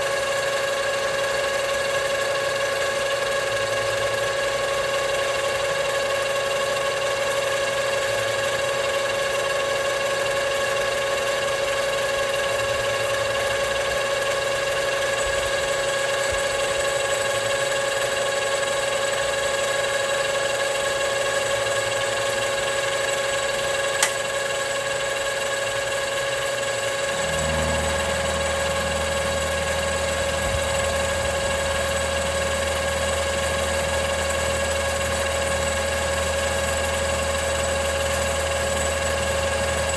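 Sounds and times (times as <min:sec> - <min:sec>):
machine tool whining: 0:06.5 - 0:39.9
sharp click: 0:24.0 - 0:24.3
low hum: 0:26.6 - 0:35.8.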